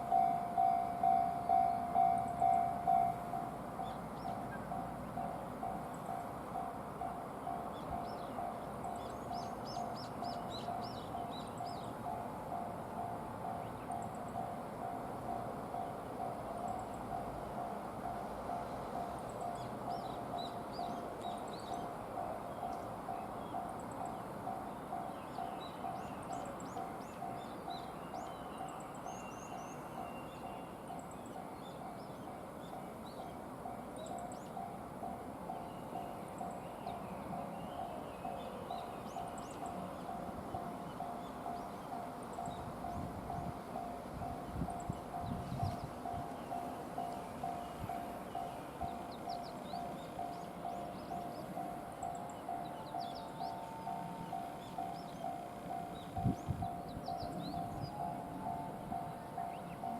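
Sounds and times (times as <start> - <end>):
level-crossing warning bell: 0.0 - 59.9
small birds chirping: 35.5 - 59.9.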